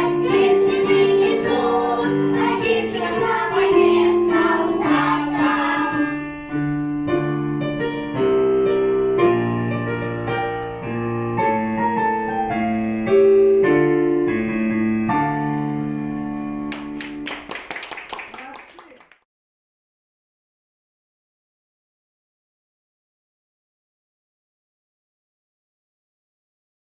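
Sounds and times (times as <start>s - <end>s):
voices singing: 0.0s - 6.2s
piano playing chords and melody: 0.0s - 17.5s.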